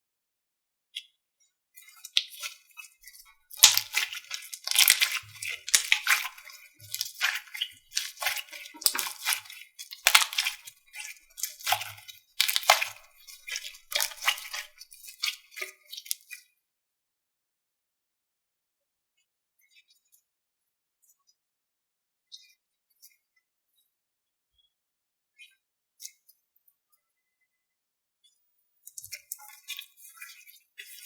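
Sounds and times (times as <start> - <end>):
slime squeezed by hand: 3.5 - 15.4.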